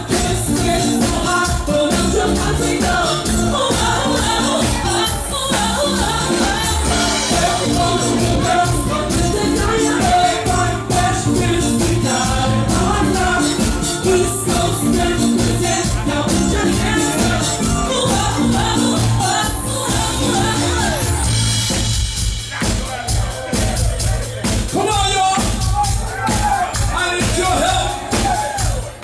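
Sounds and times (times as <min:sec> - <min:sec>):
person singing: 0:00.0 - 0:21.7
hand percussion: 0:00.0 - 0:29.0
live band playing dance-pop: 0:00.0 - 0:29.0.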